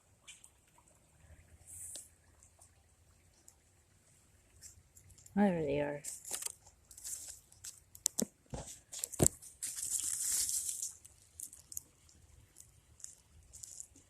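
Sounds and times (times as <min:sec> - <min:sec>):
crinkling and rustling: 0:06.0 - 0:14.0.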